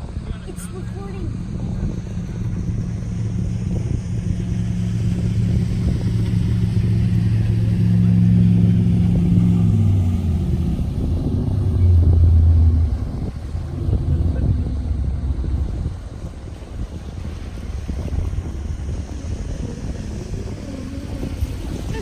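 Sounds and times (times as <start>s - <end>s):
ship's musical horn: 0.5s - 17.3s.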